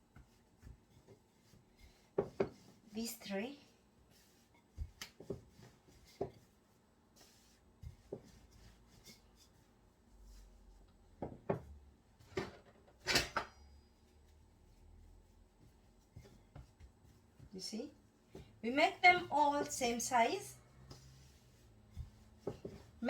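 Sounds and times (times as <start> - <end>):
knocks and taps on worktop: 2.2 - 2.6, 11.2 - 11.7.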